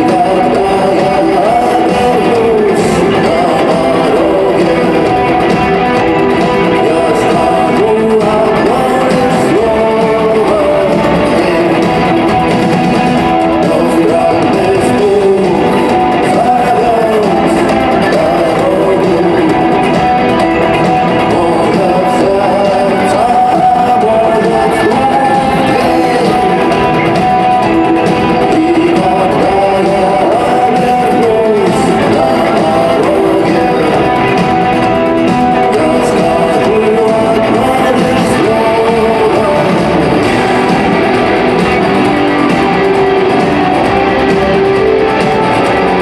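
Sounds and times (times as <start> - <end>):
electric guitars strumming: 0.0 - 46.0
live rock band: 0.0 - 46.0
person singing: 0.0 - 46.0.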